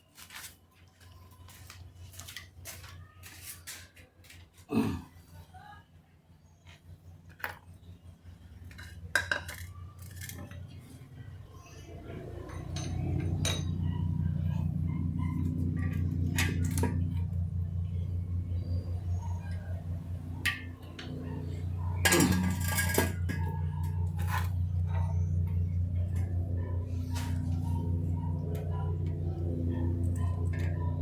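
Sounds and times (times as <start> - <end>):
steady low hum: 4.7 - 31.0
metal scraping clatter: 20.5 - 25.4
metal tools clinking: 22.0 - 25.1.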